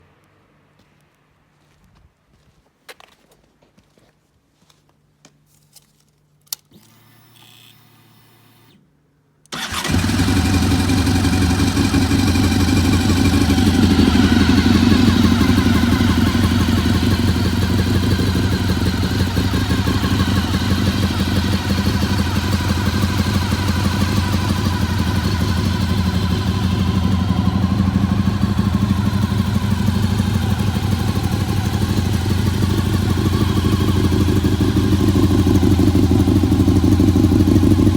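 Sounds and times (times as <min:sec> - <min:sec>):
motorcycle engine idling: 0:09.5 - 0:37.9.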